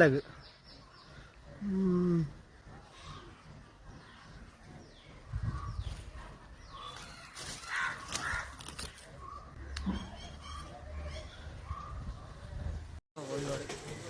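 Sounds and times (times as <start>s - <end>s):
birds calling: 0.0s - 12.9s.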